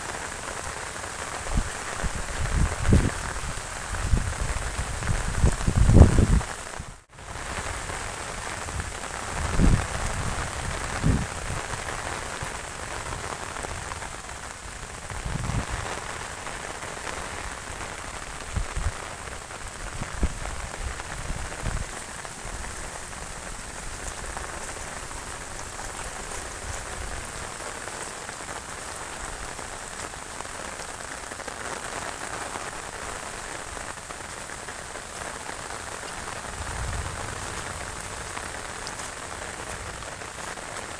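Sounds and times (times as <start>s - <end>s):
heavy rain falling: 0.0s - 40.9s.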